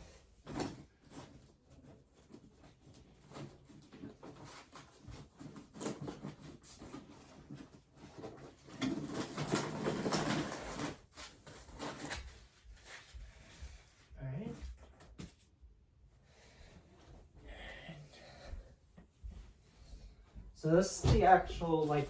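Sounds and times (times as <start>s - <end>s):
rubbing and scraping: 0.0s - 14.1s
styrofoam packing rustling: 0.4s - 13.0s.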